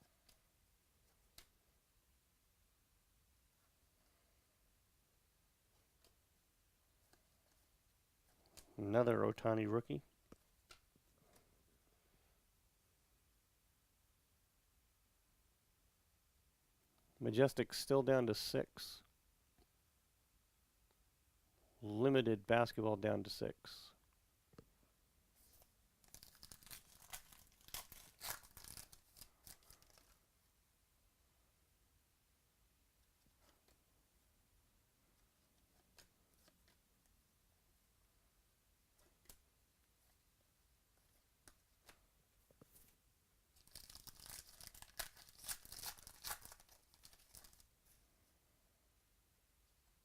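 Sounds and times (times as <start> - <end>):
wrapper tearing and crinkling: 26.0 - 30.2, 43.6 - 47.7.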